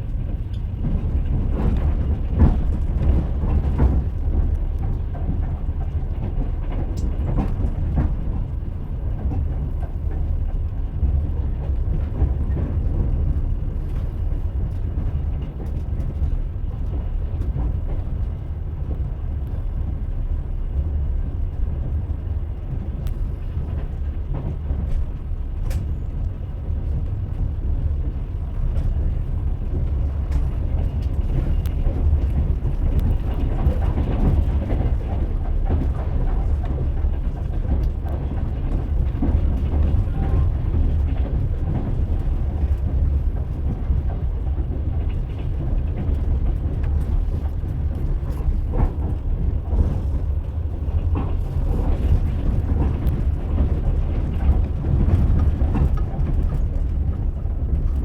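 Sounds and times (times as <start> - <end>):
train running gear rumble: 0.0 - 58.0.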